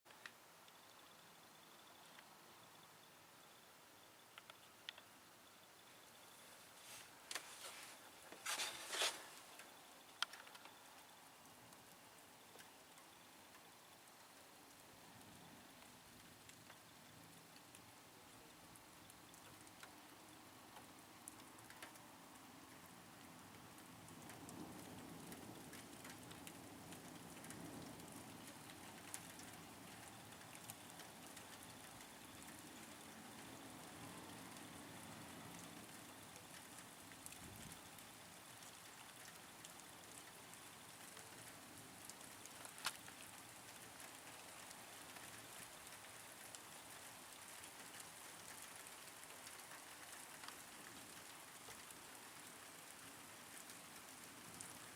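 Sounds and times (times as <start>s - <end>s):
light rain pattering: 0.1s - 54.9s
drop ticks: 4.4s - 5.1s.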